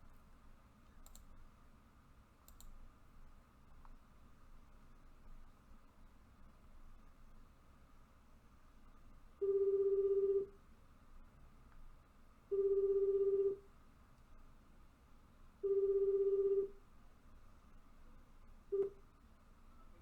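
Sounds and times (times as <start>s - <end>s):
telephone ringing tone: 9.4s - 10.5s, 12.5s - 13.6s, 15.6s - 16.8s.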